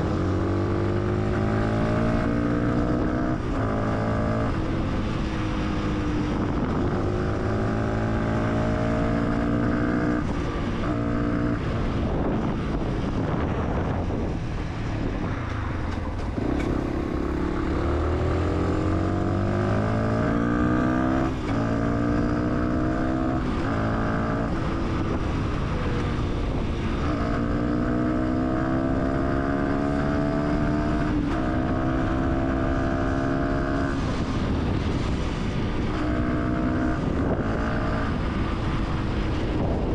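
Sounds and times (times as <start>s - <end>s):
motorcycle engine revving through gears: 0.0s - 39.9s.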